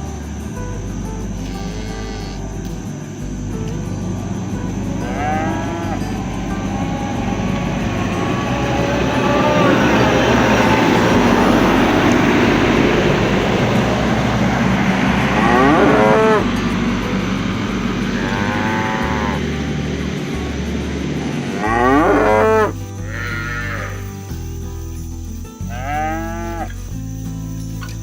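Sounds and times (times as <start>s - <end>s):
noisy rumble: 0.0s - 25.5s
cattle mooing: 1.4s - 2.8s, 5.0s - 19.9s, 21.4s - 24.0s, 25.7s - 26.7s.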